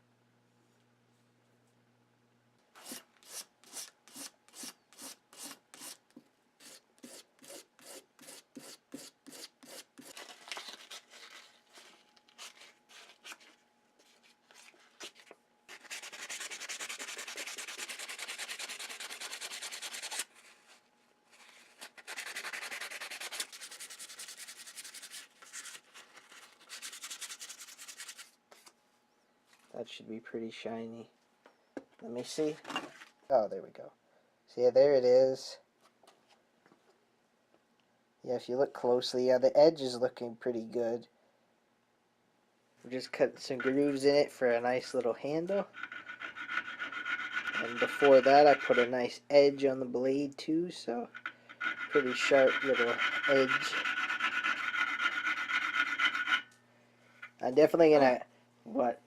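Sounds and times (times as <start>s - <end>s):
abrasive scraping knife blade: 45.7s - 49.0s, 51.1s - 56.5s.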